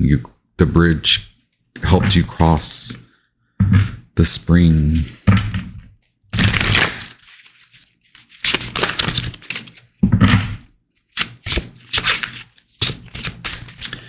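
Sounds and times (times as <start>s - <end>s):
cards riffling: 6.4s - 10.0s, 11.1s - 14.0s
cards rustling: 6.4s - 10.0s, 11.0s - 14.0s.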